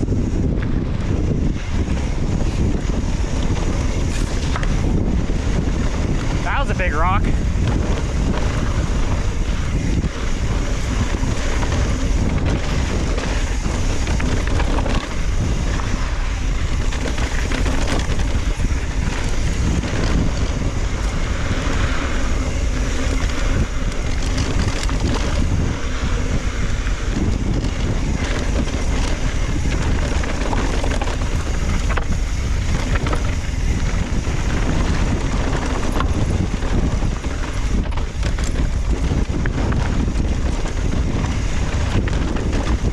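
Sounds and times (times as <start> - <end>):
wind buffeting microphone: 0.0 - 42.9
bike knocks and rattles: 9.8 - 25.8, 27.0 - 42.9.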